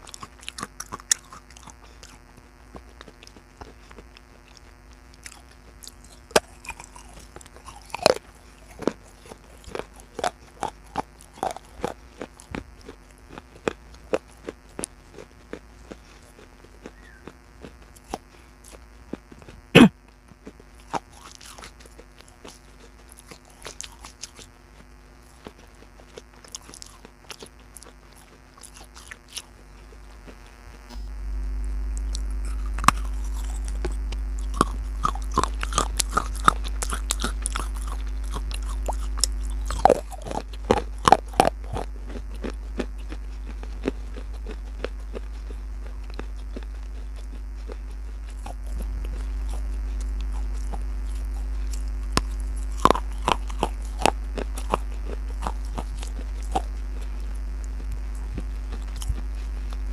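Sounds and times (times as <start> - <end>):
crunching and chewing clay: 0.0 - 59.9
steady low hum: 0.0 - 59.9.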